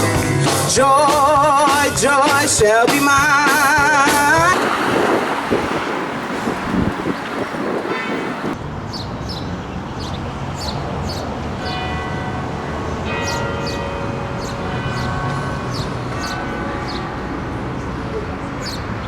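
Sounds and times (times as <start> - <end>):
low traffic rumble: 0.0 - 19.0
bells ringing: 7.9 - 8.6, 11.5 - 19.0.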